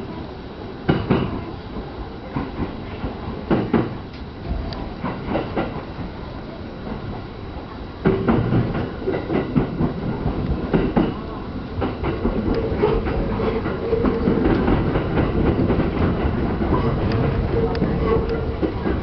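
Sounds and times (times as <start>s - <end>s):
train running rumble: 0.0s - 19.0s
train wheels clattering: 0.9s - 1.5s, 2.2s - 6.2s, 8.0s - 19.0s.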